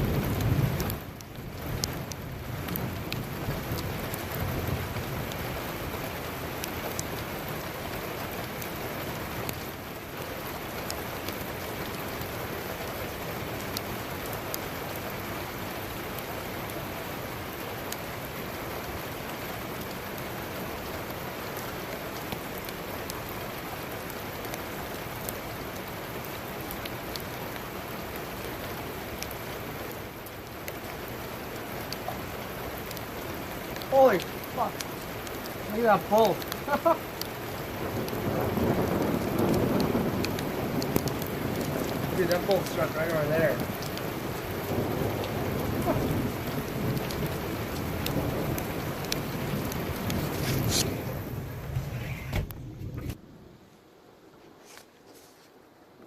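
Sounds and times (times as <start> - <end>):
low rumble of thunder: 0.0 - 6.1, 37.7 - 53.6
heavy rain pouring: 0.0 - 54.9
raindrops hitting a surface: 0.0 - 56.0.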